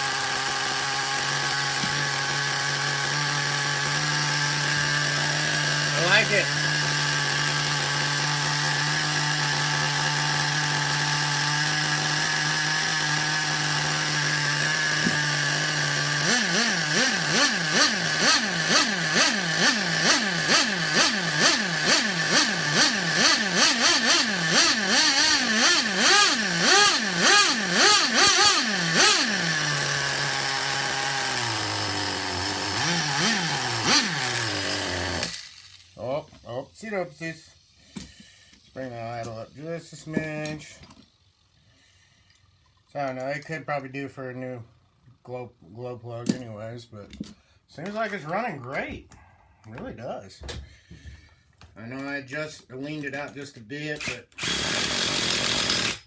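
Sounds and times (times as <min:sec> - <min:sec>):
small engine idling and revving: 0:00.0 - 0:36.2, 0:54.0 - 0:56.0.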